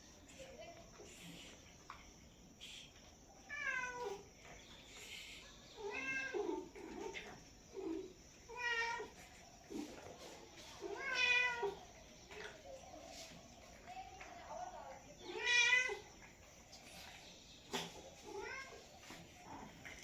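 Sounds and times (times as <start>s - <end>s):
cat meowing: 5.8s - 6.6s, 10.9s - 11.8s, 15.3s - 16.0s, 18.3s - 18.8s.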